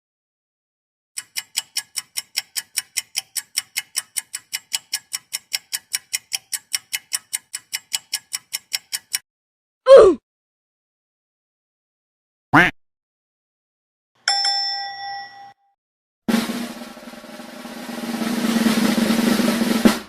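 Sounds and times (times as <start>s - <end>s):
clock ticking: 1.2s - 9.2s.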